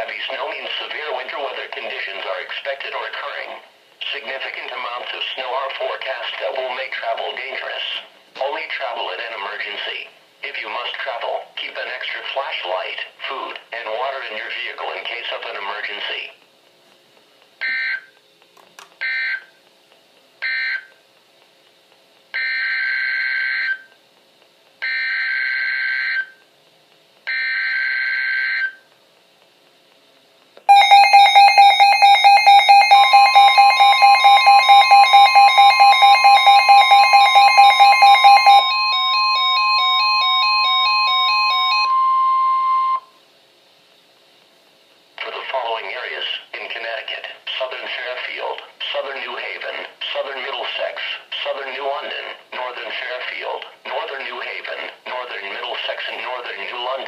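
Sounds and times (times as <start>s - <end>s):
pulsing electronic beeping alarm: 22.4s - 23.9s, 24.8s - 26.4s, 27.3s - 28.8s, 30.7s - 43.1s
screeching digital data bursts: 30.7s - 41.8s
steady warning tone: 30.7s - 43.2s.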